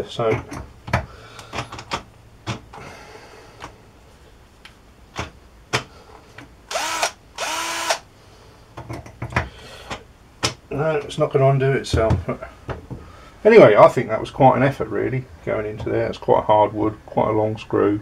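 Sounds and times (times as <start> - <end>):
cordless drill motor spinning: 6.7 - 8.0.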